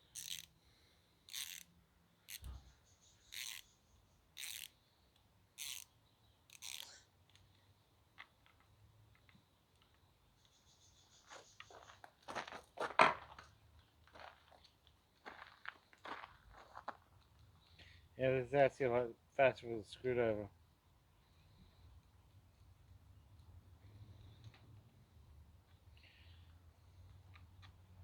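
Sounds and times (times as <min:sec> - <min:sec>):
tool ticks and clicks: 0:00.1 - 0:00.5, 0:01.3 - 0:01.7, 0:02.3 - 0:02.6, 0:03.2 - 0:03.7, 0:04.4 - 0:04.8, 0:05.6 - 0:05.9, 0:06.5 - 0:07.4.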